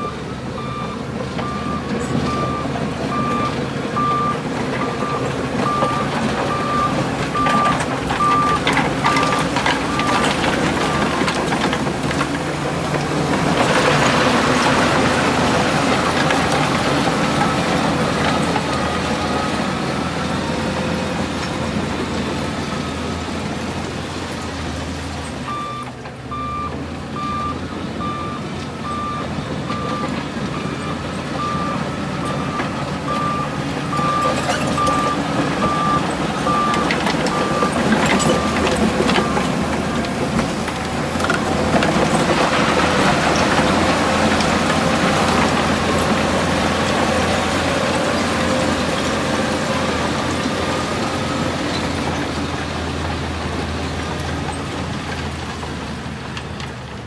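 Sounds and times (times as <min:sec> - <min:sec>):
reversing alarm beeping: 0:00.0 - 0:11.3, 0:25.4 - 0:40.0
heavy diesel machinery running: 0:00.0 - 0:57.0.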